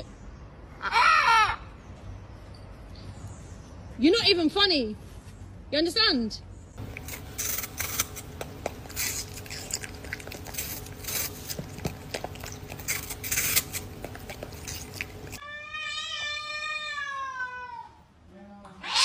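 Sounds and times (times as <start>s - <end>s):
cat meowing: 15.4s - 18.0s.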